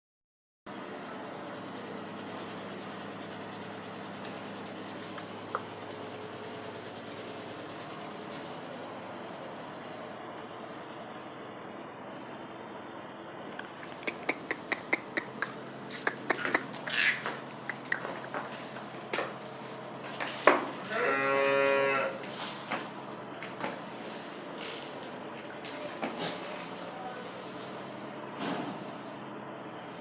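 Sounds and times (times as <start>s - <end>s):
cow mooing: 20.8s - 22.2s.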